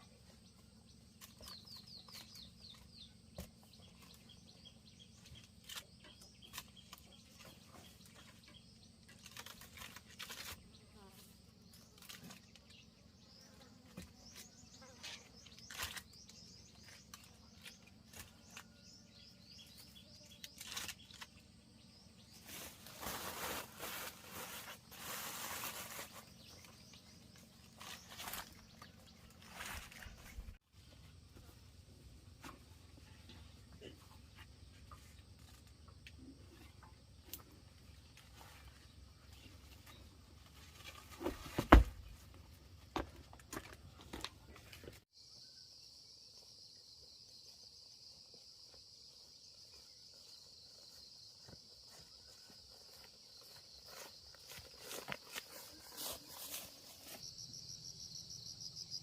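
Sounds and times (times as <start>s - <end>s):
rustling: 22.3s - 30.6s.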